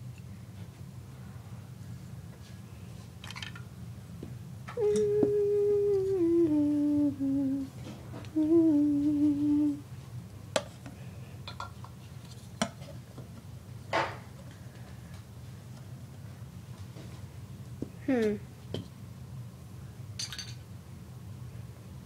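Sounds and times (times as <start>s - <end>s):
child humming a tune: 4.7s - 9.8s.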